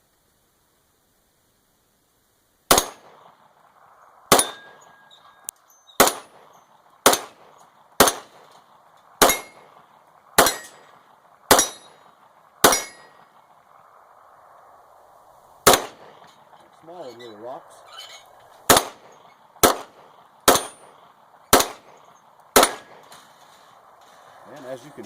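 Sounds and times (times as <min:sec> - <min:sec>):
pistol shots: 0:02.7 - 0:03.4, 0:04.3 - 0:05.2, 0:06.0 - 0:13.5, 0:15.6 - 0:16.6, 0:18.7 - 0:23.8.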